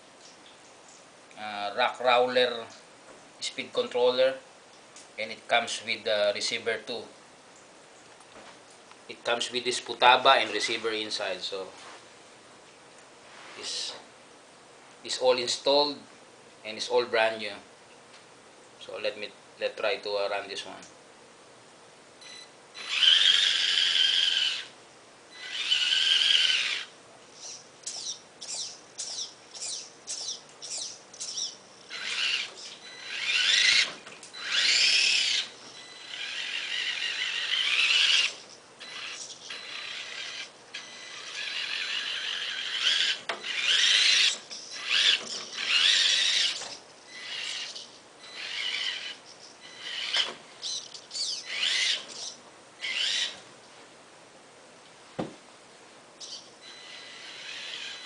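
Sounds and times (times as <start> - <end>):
toy car electric motor whining: 22.8 - 53.4, 56.2 - 58.0.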